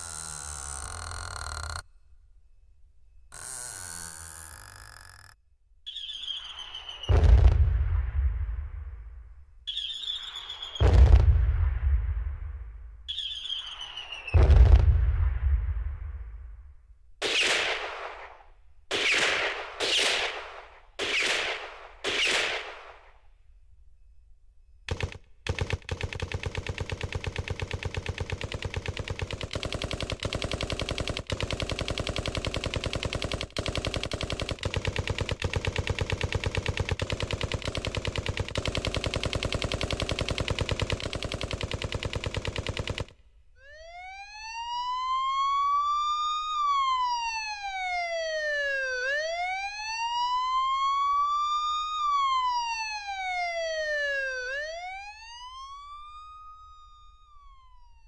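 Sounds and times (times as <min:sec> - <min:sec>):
fast repeating rattle: 0:24.9 - 0:43.1
siren tone: 0:43.6 - 0:58.0.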